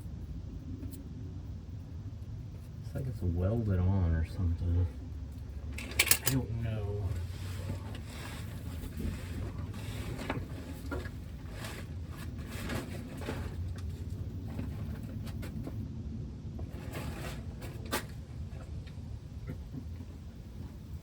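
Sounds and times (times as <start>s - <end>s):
wind rumble on microphone: 0.0s - 21.0s
tools clicking and knocking: 5.8s - 6.4s.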